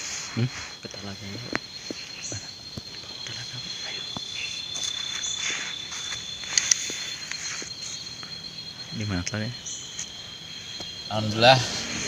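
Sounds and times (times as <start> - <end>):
crickets chirring: 0.0 - 12.0
sharp clicks: 6.4 - 7.4.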